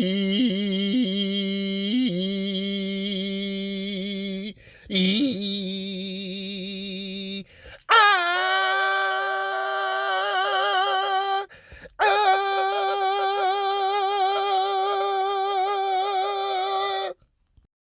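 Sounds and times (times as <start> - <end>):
animal's long wavering call: 7.9 - 17.2.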